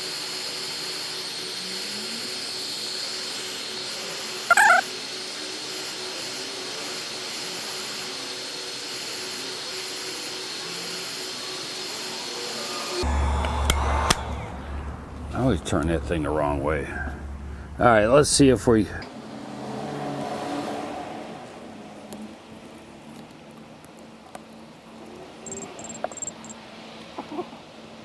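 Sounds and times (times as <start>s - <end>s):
hot-air tool blowing: 0.0s - 13.0s
short high-pitched cry: 4.5s - 4.9s.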